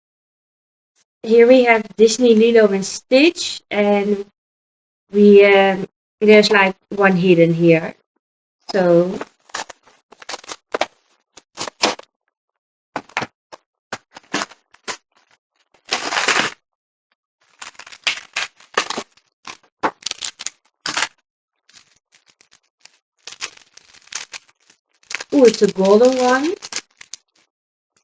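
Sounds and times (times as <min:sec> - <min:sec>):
plastic packaging crinkling: 0:09.3 - 0:12.0, 0:14.0 - 0:16.6, 0:17.4 - 0:27.5
plastic packaging ripping: 0:09.3 - 0:12.1, 0:14.1 - 0:16.6, 0:17.4 - 0:27.5.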